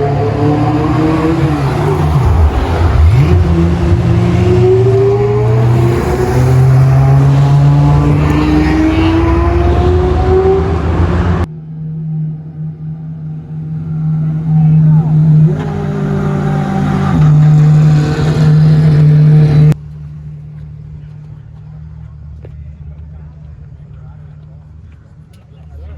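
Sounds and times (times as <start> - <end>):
low engine hum: 0.0 - 25.9
sports car engines accelerating: 0.0 - 25.9.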